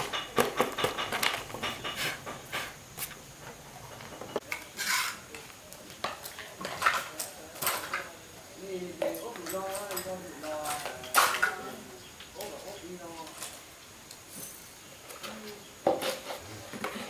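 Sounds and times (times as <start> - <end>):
small metal parts clinking: 9.2 - 11.5.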